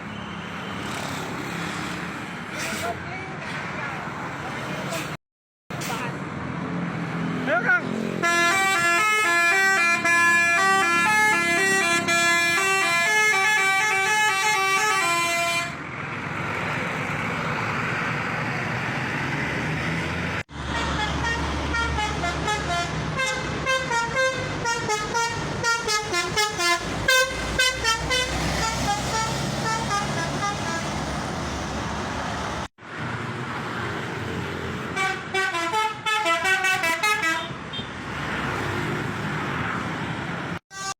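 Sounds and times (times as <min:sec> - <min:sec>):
bus engine: 0:00.0 - 0:40.9
road noise: 0:00.0 - 0:40.9
bus multi-tone horn tune: 0:08.1 - 0:15.8, 0:20.5 - 0:31.1, 0:34.9 - 0:38.0, 0:40.7 - 0:40.9.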